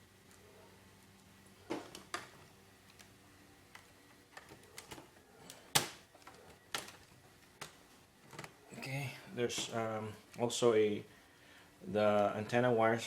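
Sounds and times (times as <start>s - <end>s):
laptop parts clicking: 1.9s - 8.6s.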